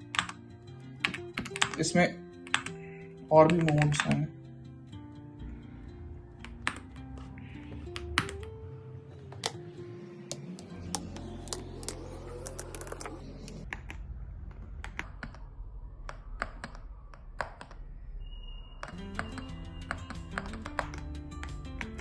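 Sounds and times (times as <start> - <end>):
soft background music: 0.0 - 13.7, 18.3 - 22.0.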